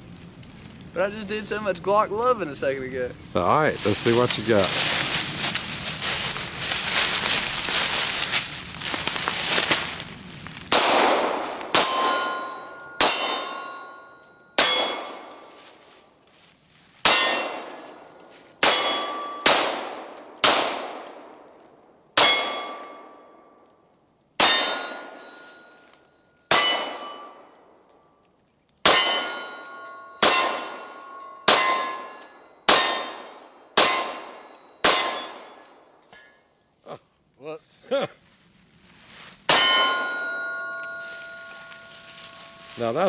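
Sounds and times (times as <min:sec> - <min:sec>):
pistol shots: 0:10.7 - 0:13.8, 0:14.6 - 0:15.3, 0:18.6 - 0:21.4
steel targets ringing: 0:11.7 - 0:15.6, 0:17.0 - 0:17.9, 0:18.6 - 0:19.6, 0:22.2 - 0:23.4, 0:24.4 - 0:27.6, 0:28.9 - 0:36.4, 0:39.5 - 0:43.0.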